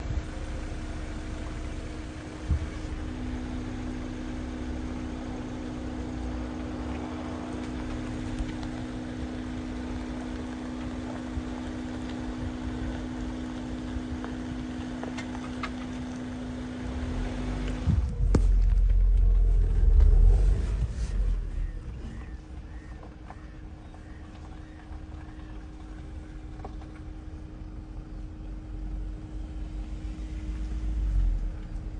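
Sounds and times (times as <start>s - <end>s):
vehicle engine idling: 0.0s - 31.9s
loud low rumble: 16.8s - 23.5s.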